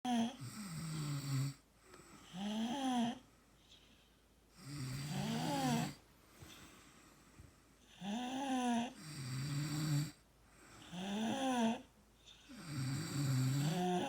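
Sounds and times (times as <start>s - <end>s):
quiet breathing: 0.2s - 14.0s
person snoring: 4.6s - 6.0s, 7.9s - 10.2s, 10.8s - 14.0s.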